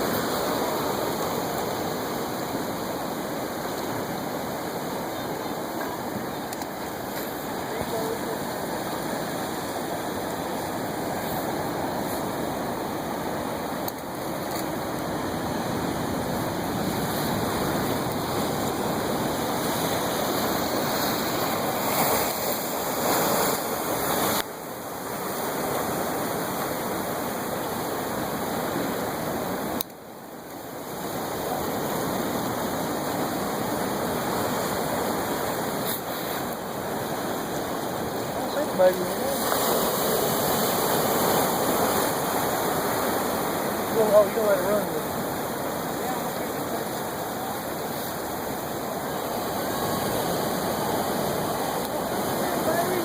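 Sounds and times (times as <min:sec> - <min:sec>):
ocean waves and surf: 0:00.0 - 0:53.0.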